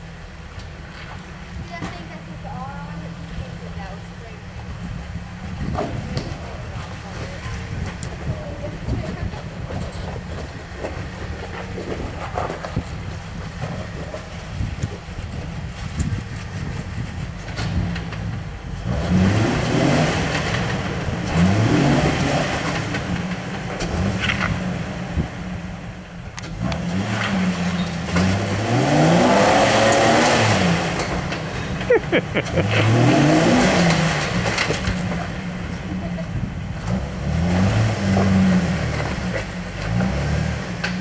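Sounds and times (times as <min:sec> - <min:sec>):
vehicle engine revving: 0:02.3 - 0:41.0.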